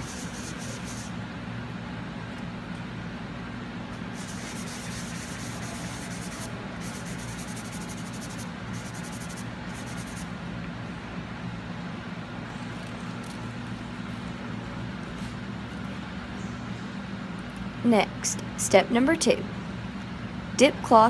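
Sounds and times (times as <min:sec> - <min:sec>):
sandpaper rubbing on metal: 0:00.0 - 0:01.1, 0:04.2 - 0:10.3
constant low hum: 0:00.0 - 0:21.0.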